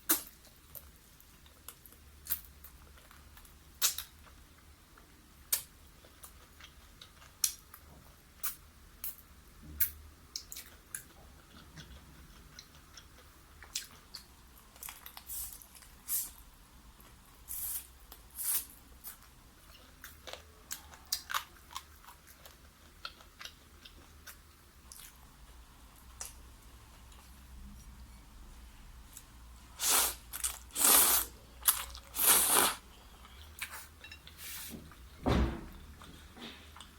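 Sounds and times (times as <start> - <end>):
person chewing food: 9.8 - 16.0, 18.4 - 27.5, 29.1 - 34.4.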